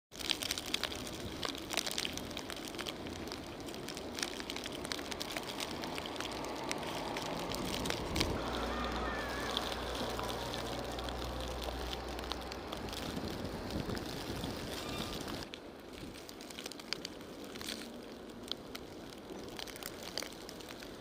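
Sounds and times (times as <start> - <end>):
low engine hum: 4.7 - 15.6.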